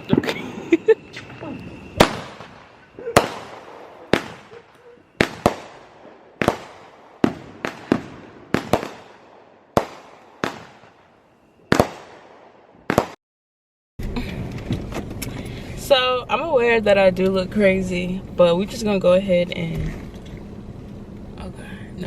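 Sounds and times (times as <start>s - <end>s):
fireworks bangs with echo: 2.0s - 13.2s.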